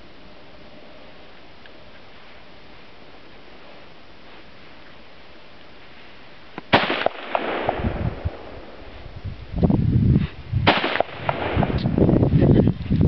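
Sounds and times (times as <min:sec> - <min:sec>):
rifle shots: 0:06.7 - 0:08.9, 0:10.6 - 0:11.9
low rumbling noise: 0:07.1 - 0:13.0.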